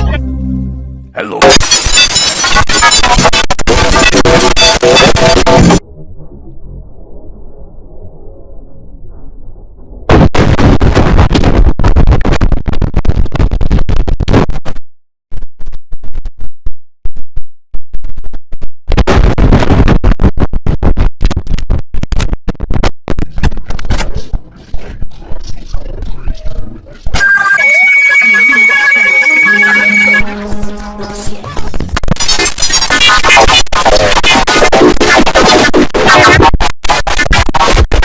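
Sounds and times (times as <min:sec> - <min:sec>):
distorted stuttering startup chime: 0:01.4 - 0:05.8, 0:27.2 - 0:31.6
digital clicks: 0:27.2 - 0:31.1.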